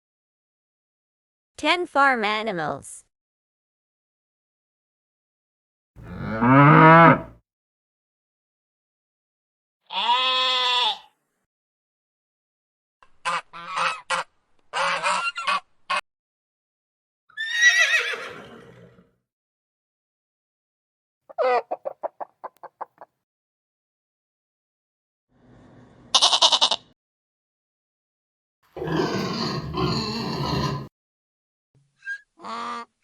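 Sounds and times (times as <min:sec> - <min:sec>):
farm animal calls: 0:21.3 - 0:23.0
chickens clucking: 0:21.3 - 0:23.1.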